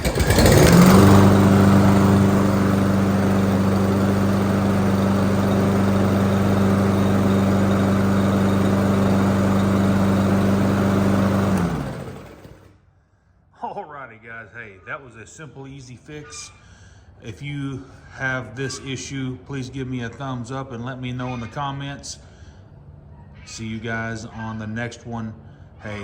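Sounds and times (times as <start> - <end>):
lawn mower engine pull-started: 0.0 - 12.7.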